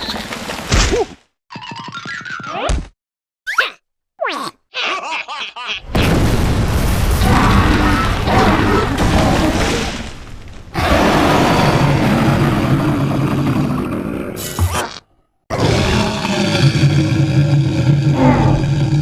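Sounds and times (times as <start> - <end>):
rumbling cartoon sound effect: 15.5 - 19.0.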